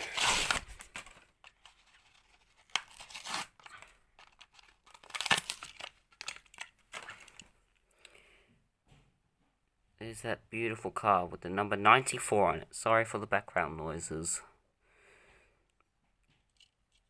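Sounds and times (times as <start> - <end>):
cardboard tearing: 0.0 - 7.1
plastic blister crinkling: 0.0 - 7.6.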